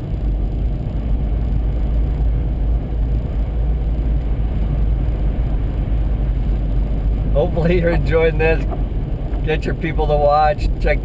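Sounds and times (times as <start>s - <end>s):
low vehicle rumble inside car: 0.0s - 11.0s.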